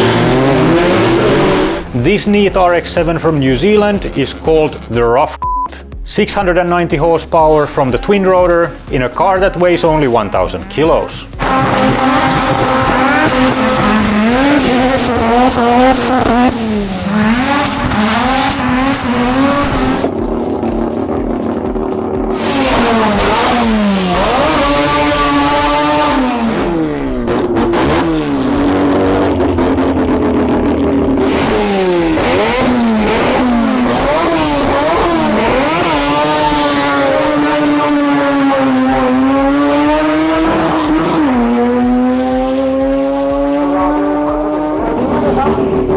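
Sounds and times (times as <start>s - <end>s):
rotary engine revving: 0.0s - 2.1s, 11.4s - 45.9s.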